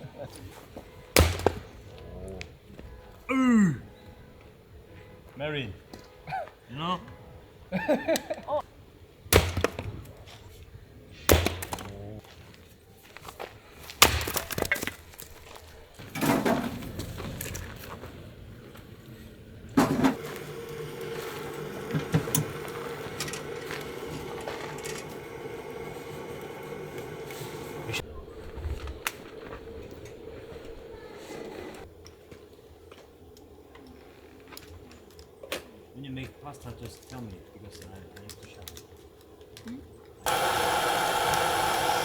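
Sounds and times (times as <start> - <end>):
steady hum: 19.8 - 31.8.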